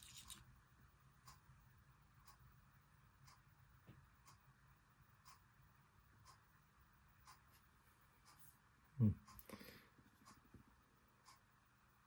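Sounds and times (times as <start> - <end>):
faint low hum: 0.0 - 12.0
faint ticking: 1.0 - 7.5.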